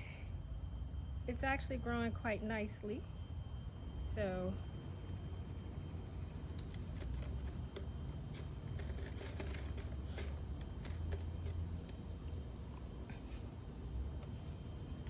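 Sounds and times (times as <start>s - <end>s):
insects chirring: 0.0s - 15.0s
potting mix clicks and rustles: 5.6s - 15.0s.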